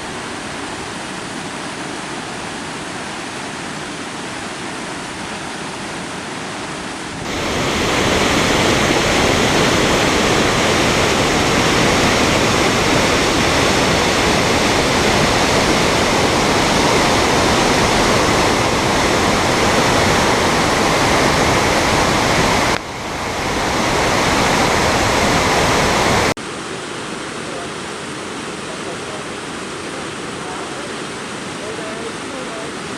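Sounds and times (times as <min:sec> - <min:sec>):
waterfall rushing: 0:00.0 - 0:32.9.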